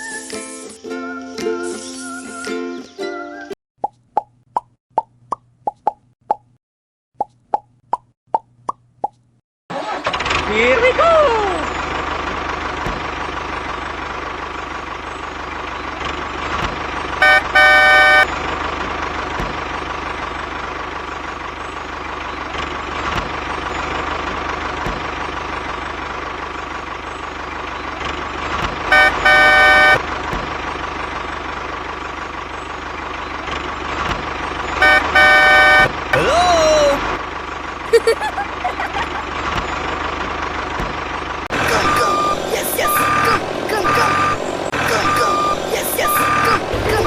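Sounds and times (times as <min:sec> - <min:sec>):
toy horn double honk: 0:17.2 - 0:18.3, 0:28.9 - 0:30.0, 0:34.8 - 0:36.0
toy tractor motor running: 0:28.9 - 0:30.0, 0:34.8 - 0:35.8.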